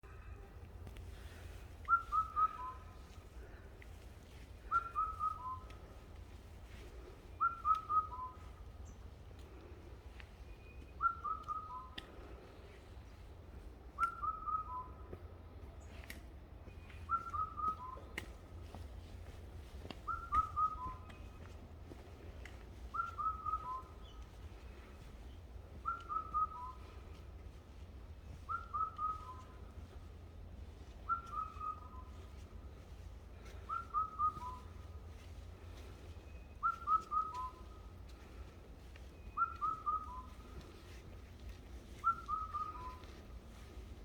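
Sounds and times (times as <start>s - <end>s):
bird singing whistled phrase: 1.9s - 2.9s, 4.7s - 5.8s, 7.4s - 8.4s, 10.6s - 12.0s, 14.0s - 15.0s, 17.1s - 18.1s, 20.1s - 21.3s, 22.9s - 24.2s, 25.8s - 26.8s, 28.5s - 29.6s, 31.1s - 32.1s, 33.7s - 34.7s, 36.3s - 37.8s, 39.2s - 40.4s, 42.0s - 43.1s
steady low rumble: 18.2s - 44.0s.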